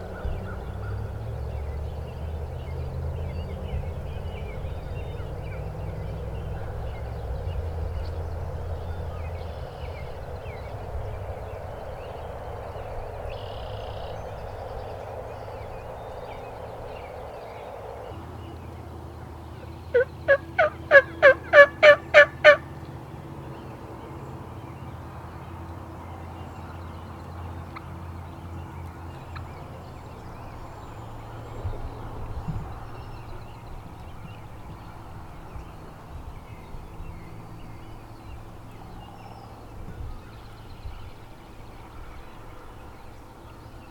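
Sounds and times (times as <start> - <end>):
turkey gobbling: 19.9 - 22.7.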